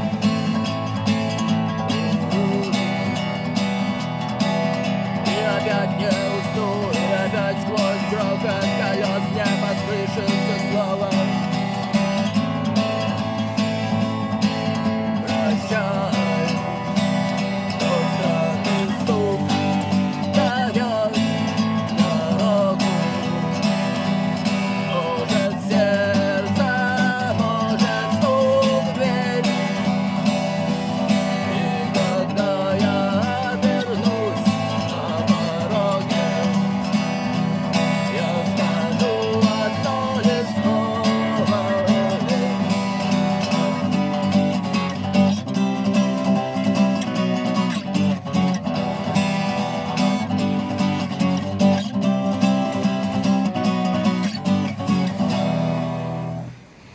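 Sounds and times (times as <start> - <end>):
strummed guitar: 0.0 - 56.9.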